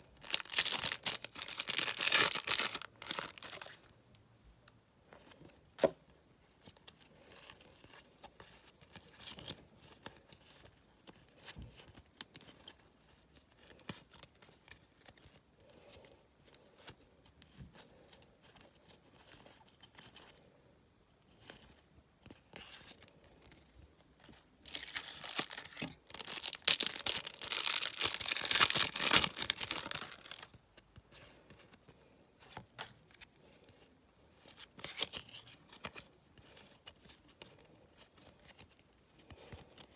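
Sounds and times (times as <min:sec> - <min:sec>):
wrapper tearing and crinkling: 0:00.0 - 0:03.8, 0:24.6 - 0:30.6
card packets rustling and clicking: 0:00.0 - 0:03.9, 0:22.3 - 0:30.6.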